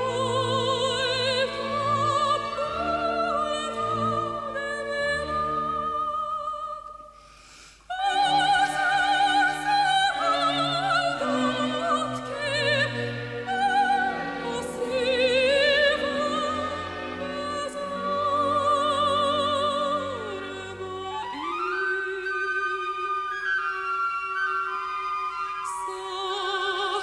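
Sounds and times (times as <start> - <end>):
operatic soprano singing: 0.0 - 7.2, 7.9 - 27.0.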